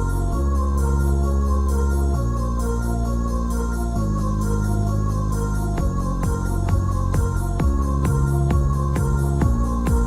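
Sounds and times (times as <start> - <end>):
deep bass: 0.0 - 10.0.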